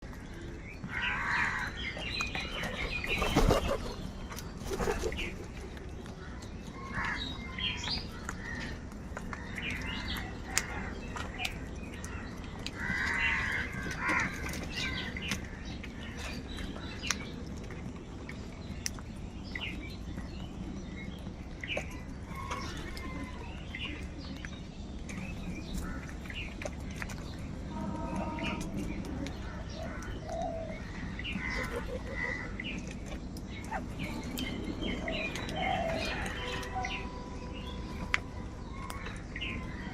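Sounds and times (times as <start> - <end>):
crows cawing: 0.9 - 1.8, 12.8 - 15.0, 31.3 - 32.5.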